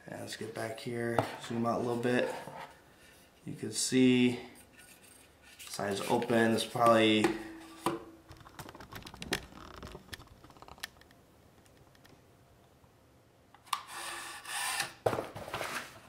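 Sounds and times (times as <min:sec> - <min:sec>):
rubbing and sliding on a surface: 0:01.2 - 0:03.4.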